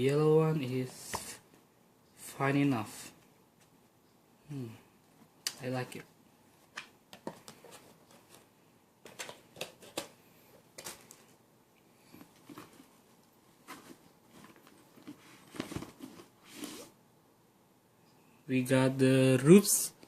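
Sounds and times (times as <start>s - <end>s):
packaging rustling and clicking: 6.7s - 10.2s, 13.6s - 16.7s.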